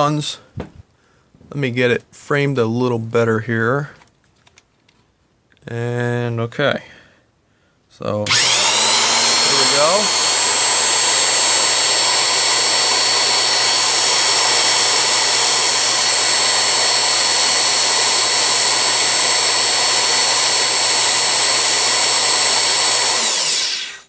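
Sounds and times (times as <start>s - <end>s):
electric drill motor whine: 8.3s - 24.0s.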